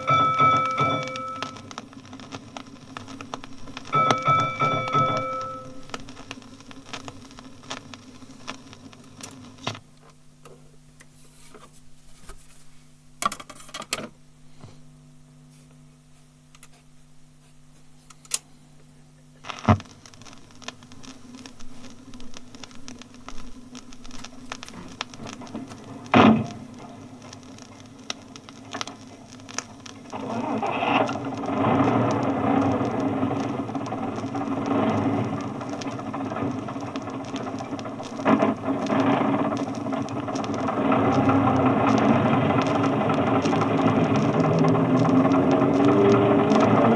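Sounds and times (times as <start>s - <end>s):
road noise: 40.8s - 46.9s.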